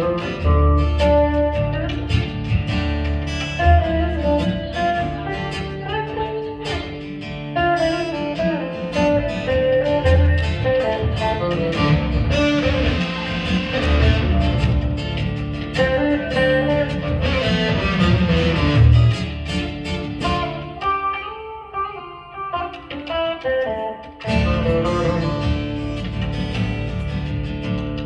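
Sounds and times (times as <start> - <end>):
bass line: 0.0 - 20.9, 24.3 - 28.0
strummed guitar: 0.0 - 28.0
dance band playing: 9.1 - 21.2.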